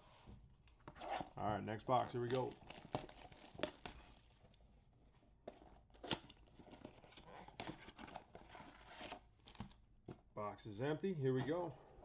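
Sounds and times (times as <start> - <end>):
card packs rustling: 1.9 - 4.4.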